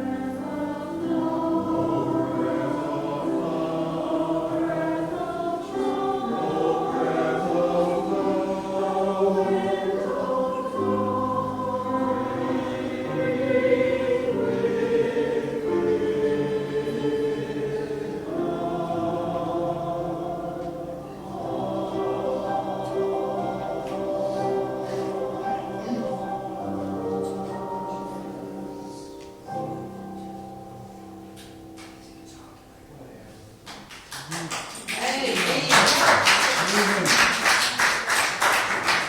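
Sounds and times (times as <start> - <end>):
church choir singing: 0.0 - 32.7, 35.7 - 39.0.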